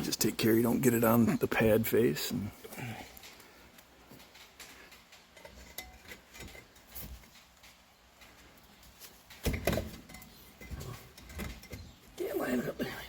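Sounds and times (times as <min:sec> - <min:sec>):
metal tools clinking: 0:02.8 - 0:12.6.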